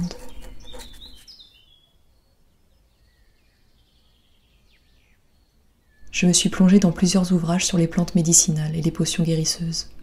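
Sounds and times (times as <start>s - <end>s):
faint birdsong: 0.0s - 10.0s.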